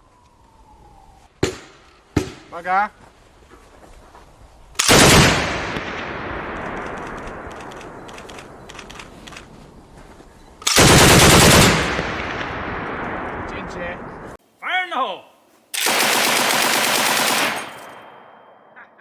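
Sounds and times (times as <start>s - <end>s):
gunfire echo: 4.8s - 9.2s, 10.7s - 14.4s, 15.8s - 18.6s
heavy machine gun bursts: 10.6s - 12.0s, 15.8s - 18.0s.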